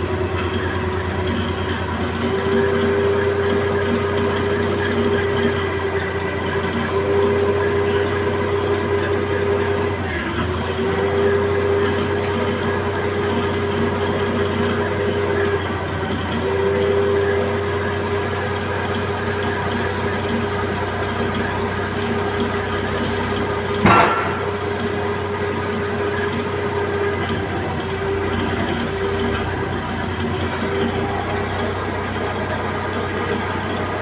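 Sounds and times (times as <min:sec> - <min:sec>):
heavy machine engine humming: 0:00.0 - 0:34.0
sharp knock: 0:23.8 - 0:24.6.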